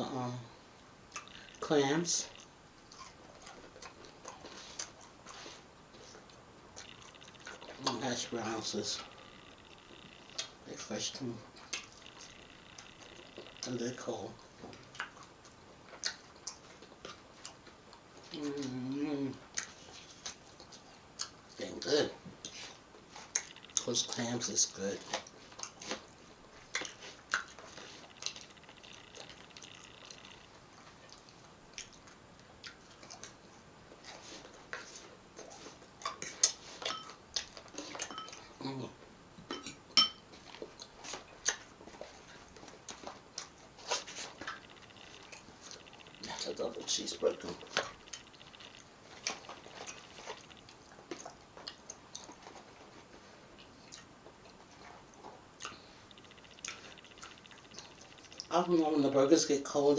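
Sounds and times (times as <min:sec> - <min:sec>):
close chewing and mouth sounds: 0:01.1 - 0:59.9.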